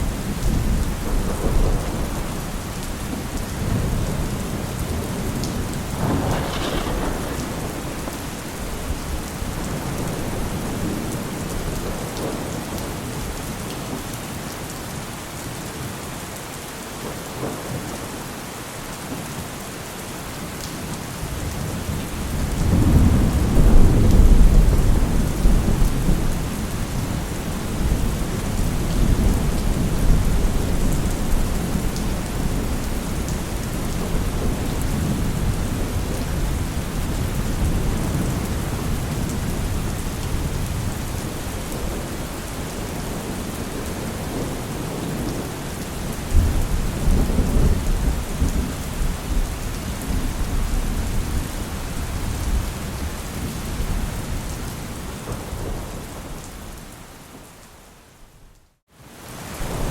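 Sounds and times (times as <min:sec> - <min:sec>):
heavy rain falling: 0:00.0 - 0:59.9
deep thunder rumble: 0:00.1 - 0:12.8, 0:21.4 - 0:42.1.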